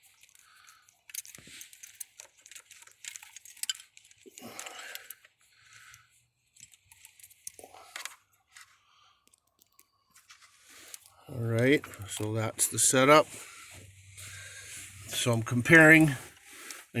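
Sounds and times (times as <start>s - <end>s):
small metallic clicks and rattles: 0.0s - 17.0s
soft rustle: 10.1s - 17.0s.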